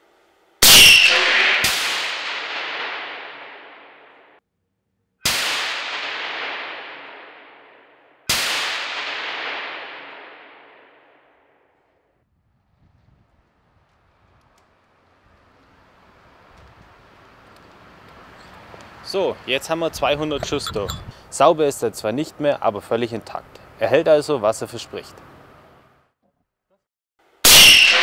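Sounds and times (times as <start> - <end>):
suppressed rifle shots echoing: 0.6 - 4.4, 5.2 - 11.5.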